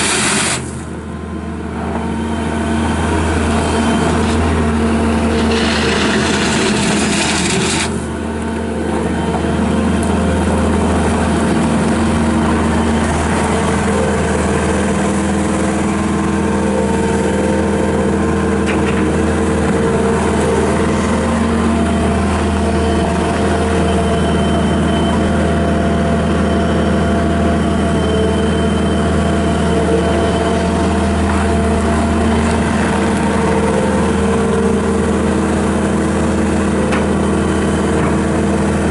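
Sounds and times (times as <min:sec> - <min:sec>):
hiss: 0:00.0 - 0:00.8
diesel engine running: 0:00.0 - 0:38.9.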